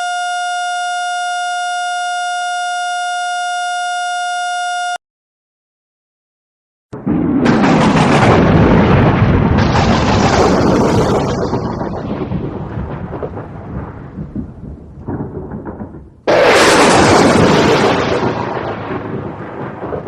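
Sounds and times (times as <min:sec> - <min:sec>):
crash with noisy rumble: 0:07.0 - 0:20.0.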